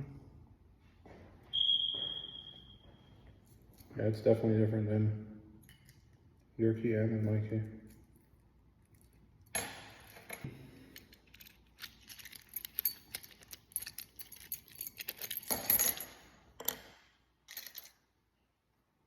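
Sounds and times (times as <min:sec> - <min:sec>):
keys jangling: 0:07.8 - 0:16.8, 0:17.5 - 0:18.0
metal lock parts clinking: 0:07.8 - 0:18.1.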